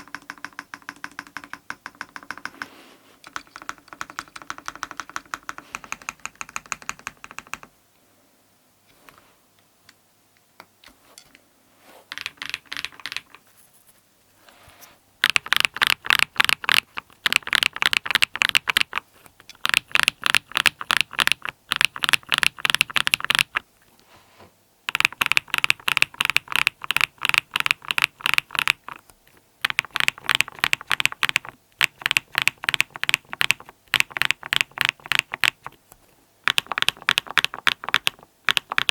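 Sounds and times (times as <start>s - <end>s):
typing on mechanical keyboard: 0.0s - 2.6s, 3.2s - 7.7s, 12.1s - 13.4s, 15.2s - 23.6s, 24.9s - 35.8s, 36.4s - 38.9s.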